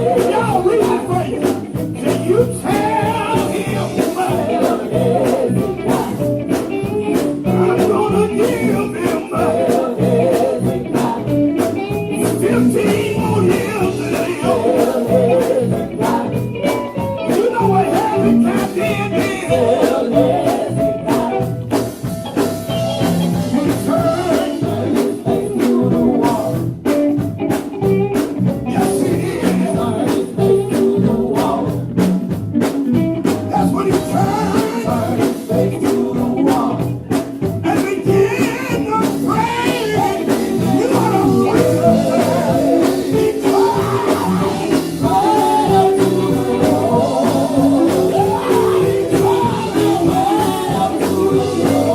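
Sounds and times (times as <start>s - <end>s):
gospel band playing: 0.0s - 51.9s
person singing: 22.7s - 26.6s, 37.7s - 51.9s.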